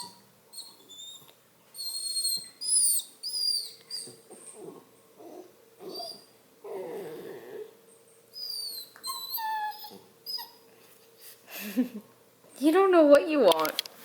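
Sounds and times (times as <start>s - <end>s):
puppy whimpering: 0.0s - 10.7s
puppy whining: 0.0s - 10.9s.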